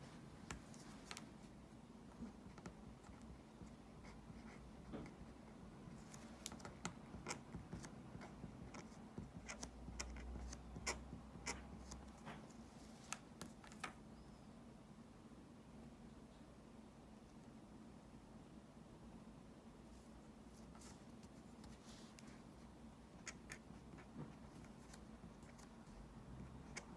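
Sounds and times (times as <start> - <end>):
pen scratching on paper: 2.3 - 5.3, 6.6 - 11.9.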